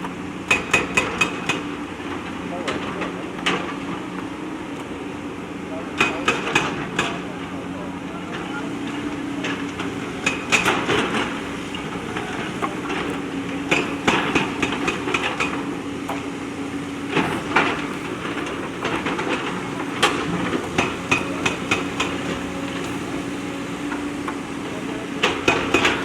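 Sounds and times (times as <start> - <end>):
backhoe diesel engine running: 0.0 - 26.0
bucket clanking against stones: 9.5 - 26.0.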